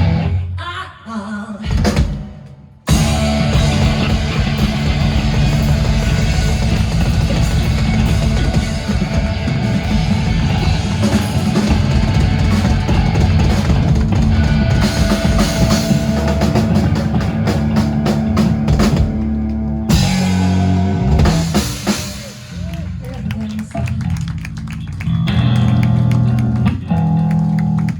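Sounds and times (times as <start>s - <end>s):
drum kit hitting rapidly: 1.7s - 22.9s
live rock band playing: 2.9s - 27.9s.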